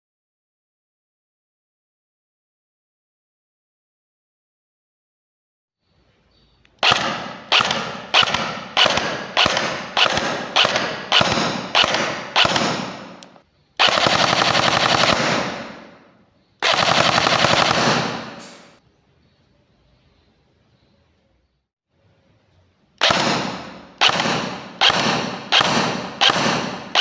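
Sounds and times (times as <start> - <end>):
airsoft gun rapid fire bursts: 6.8 - 18.8, 23.0 - 27.0
airsoft gun single shots: 6.8 - 18.8, 23.0 - 27.0.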